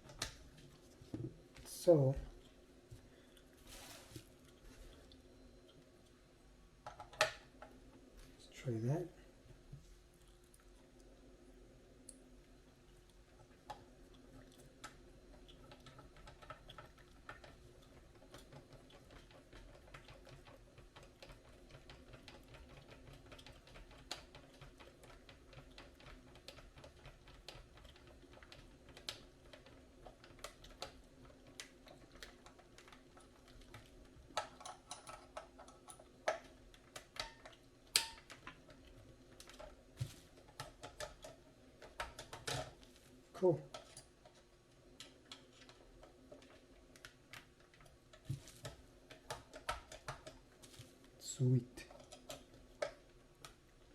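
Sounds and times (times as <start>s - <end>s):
faint low hum: 0.0s - 53.9s
small parts clicking and tapping: 13.1s - 42.9s, 43.7s - 50.9s, 51.8s - 53.9s.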